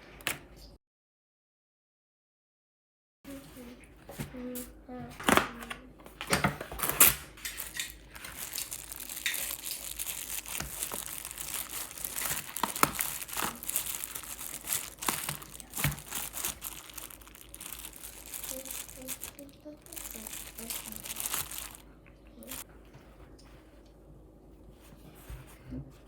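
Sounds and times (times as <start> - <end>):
packaging crinkling and rustling: 5.2 - 21.8, 22.4 - 22.6.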